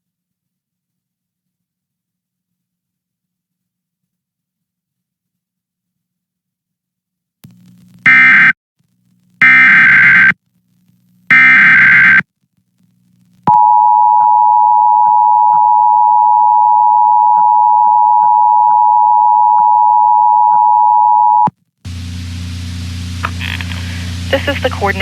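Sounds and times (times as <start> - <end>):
warbling data screech: 11.7 - 12.2.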